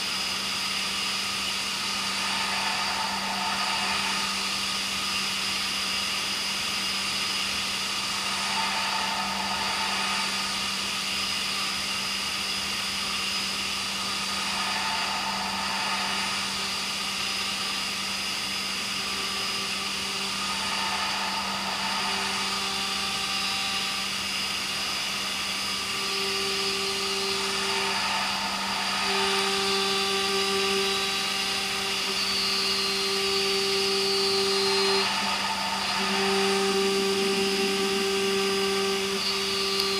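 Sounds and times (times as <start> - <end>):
machine spindle humming and whining: 0.0 - 39.9
metal cutting tone: 1.2 - 39.9.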